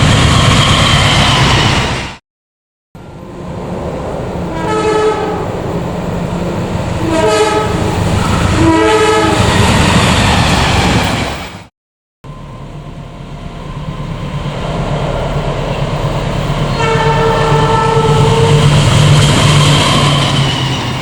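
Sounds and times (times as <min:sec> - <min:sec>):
train running noise: 0:00.0 - 0:02.2, 0:03.0 - 0:11.7, 0:12.3 - 0:21.0
train horn blasts: 0:04.5 - 0:05.6, 0:07.0 - 0:09.5, 0:16.7 - 0:18.7.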